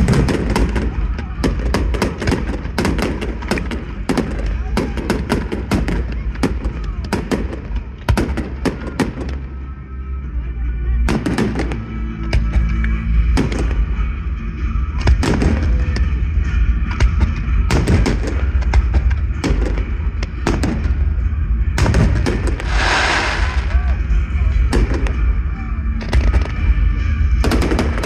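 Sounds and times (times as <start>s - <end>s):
dense hissing firework burst: 22.5s - 24.0s
fireworks shells bursting: 22.5s - 24.0s.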